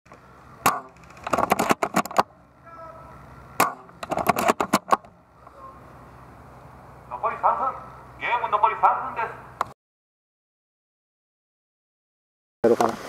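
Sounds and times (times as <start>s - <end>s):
airsoft gunfire snaps: 0.6s - 1.8s, 3.6s - 4.0s.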